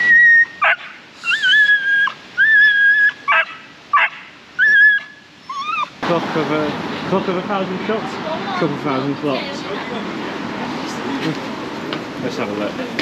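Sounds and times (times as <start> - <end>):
playground swing squeaking: 0.0 - 3.4.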